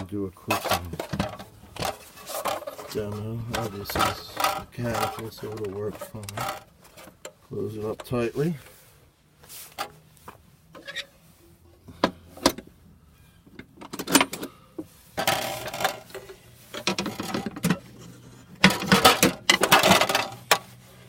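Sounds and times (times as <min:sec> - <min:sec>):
metal clattering: 0:00.5 - 0:07.4, 0:15.2 - 0:20.7.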